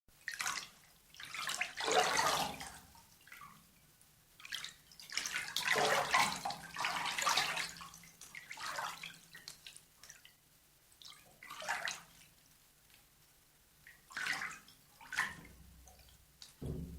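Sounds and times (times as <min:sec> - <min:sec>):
water splashing in bathtub: 0:00.2 - 0:03.6, 0:04.4 - 0:10.3, 0:11.0 - 0:12.4, 0:13.8 - 0:16.9
water dripping and trickling: 0:00.2 - 0:10.4, 0:13.8 - 0:16.9.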